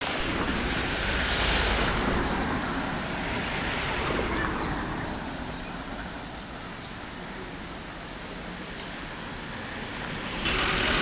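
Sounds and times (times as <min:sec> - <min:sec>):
passing vehicles rushing: 0:00.0 - 0:11.0.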